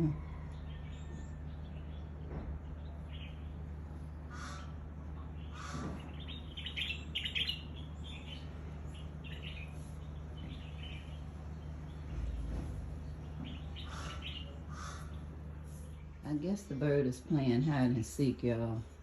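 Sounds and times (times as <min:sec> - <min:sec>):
steady low hum: 0:00.0 - 0:19.0
bird chirping: 0:00.4 - 0:03.7, 0:05.2 - 0:16.8.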